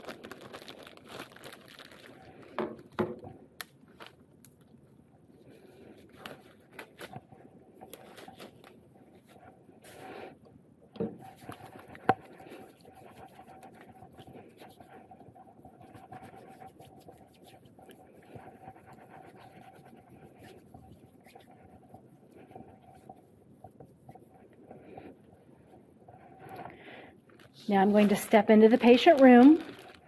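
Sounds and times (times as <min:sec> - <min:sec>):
phone rustling in plastic bag: 0:00.0 - 0:02.9, 0:07.8 - 0:08.8, 0:27.3 - 0:30.0
faint steady hum: 0:00.0 - 0:30.0.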